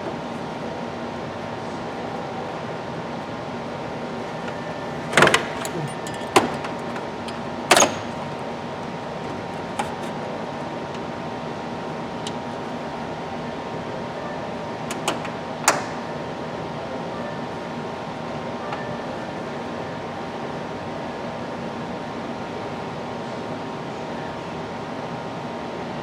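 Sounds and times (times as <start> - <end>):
steady background hum: 0.0 - 26.0
knocks and clicks of tools: 4.3 - 8.4, 9.2 - 10.2, 14.9 - 16.1.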